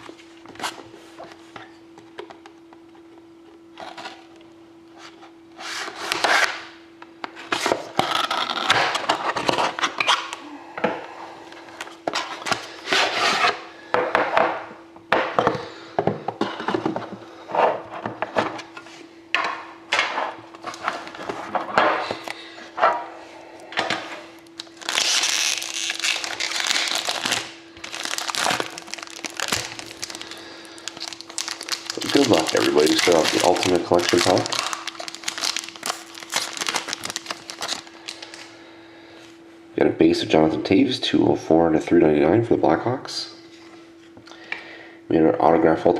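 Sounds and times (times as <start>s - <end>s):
tin handled and unwrapped: 24.6s - 38.4s.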